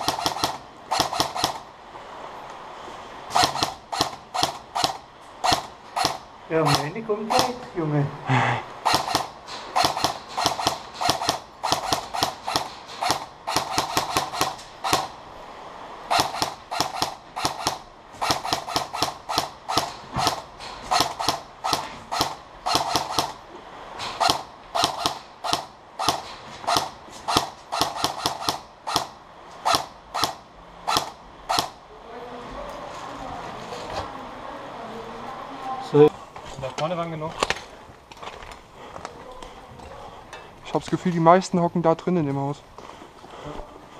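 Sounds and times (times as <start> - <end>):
airsoft gun shots: 0.0 - 1.7, 3.3 - 7.6, 8.8 - 15.2, 16.1 - 23.4, 24.0 - 31.8.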